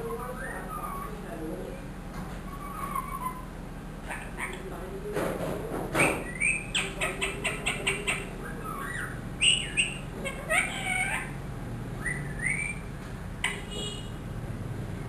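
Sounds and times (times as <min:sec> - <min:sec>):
parakeet squawks and chirps: 0:00.0 - 0:01.3, 0:02.4 - 0:04.6, 0:06.0 - 0:11.4, 0:12.0 - 0:14.2.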